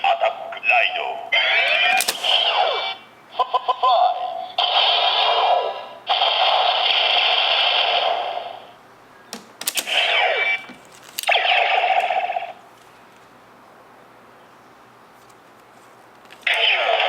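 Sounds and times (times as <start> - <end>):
toy belt electronic sound effects: 1.4 - 3.0, 9.7 - 12.6
plastic clicks: 1.7 - 2.4, 9.3 - 11.4.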